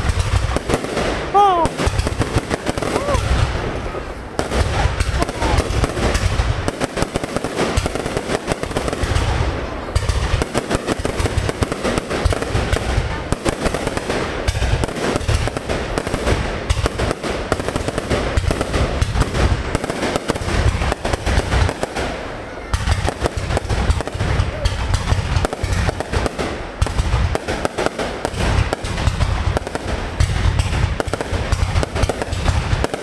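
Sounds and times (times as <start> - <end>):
fireworks crackling and popping: 22.8 - 33.0.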